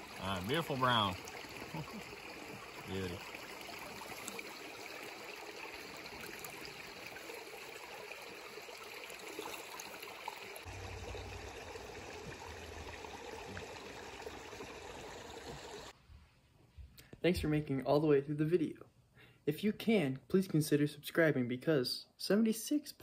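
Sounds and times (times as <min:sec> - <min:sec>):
river water flowing: 0:00.0 - 0:15.9.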